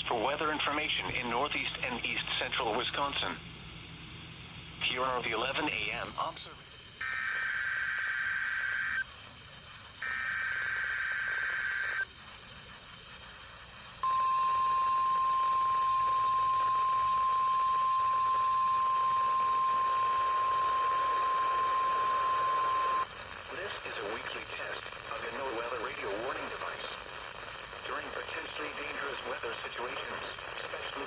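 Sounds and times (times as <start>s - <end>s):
buzzy digital data bursts: 4.8s - 31.0s
steady warning alarm tone: 7.0s - 9.1s, 9.8s - 12.1s, 13.4s - 23.1s.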